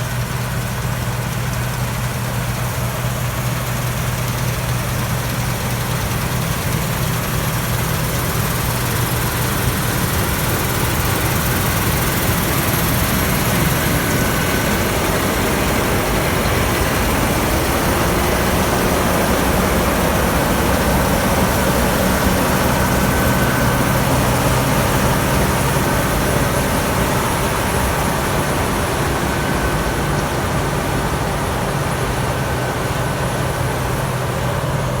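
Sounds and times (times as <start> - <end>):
combine harvester engine drone: 0.0 - 35.0.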